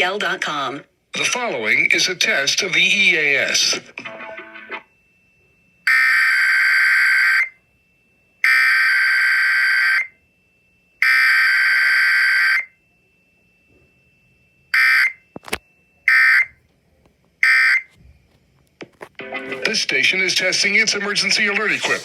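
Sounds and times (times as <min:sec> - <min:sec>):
warbling digital data tones: 0:19.4 - 0:22.0.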